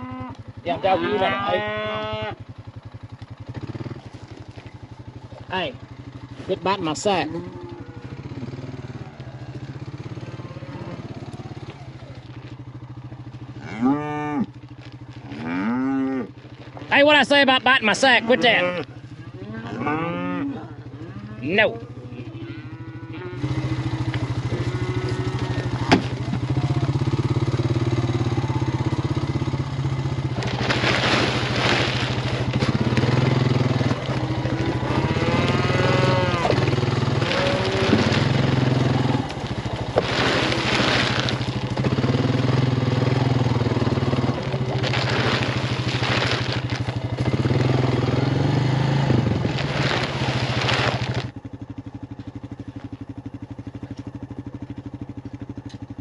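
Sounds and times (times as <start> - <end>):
cattle mooing and bawling: 0.0 - 2.4, 6.8 - 12.2, 13.6 - 14.6, 15.2 - 16.4, 17.8 - 26.0, 31.1 - 41.9
low engine hum: 0.0 - 56.0.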